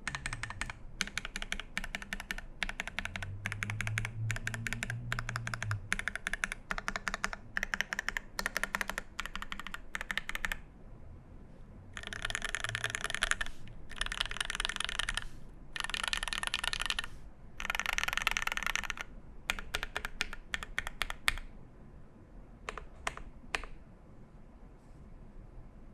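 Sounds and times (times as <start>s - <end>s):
mechanical keyboard typing: 0.0s - 10.6s, 12.0s - 21.5s, 22.7s - 23.8s.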